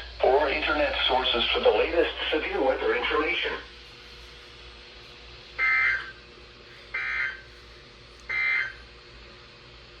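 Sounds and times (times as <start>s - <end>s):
buzzing digital data tones: 5.6s - 6.1s.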